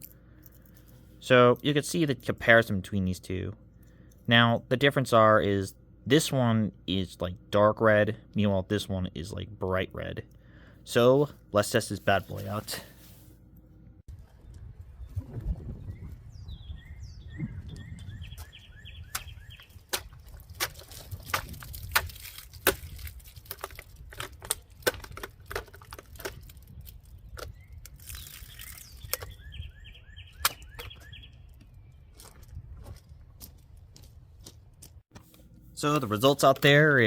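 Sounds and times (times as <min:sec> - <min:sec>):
bird chirping: 0:15.8 - 0:20.2, 0:27.0 - 0:32.5.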